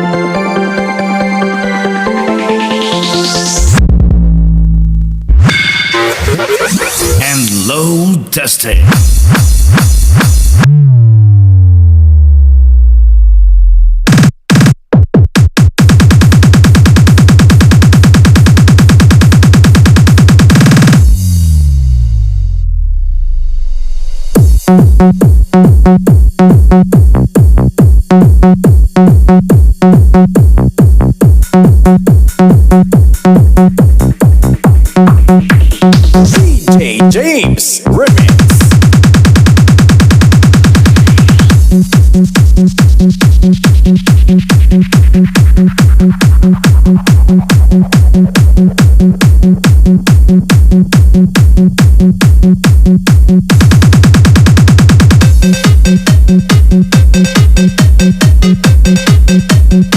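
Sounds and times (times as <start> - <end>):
kick drum: 8.8 - 10.7, 14.0 - 21.6, 24.4 - 37.0, 37.9 - 59.9
pulsing bass note: 8.8 - 14.1, 21.0 - 25.4, 32.6 - 49.5, 55.2 - 59.9
rapid drum roll: 33.4 - 37.0, 38.0 - 49.8
deep kick drum hits: 38.1 - 59.8.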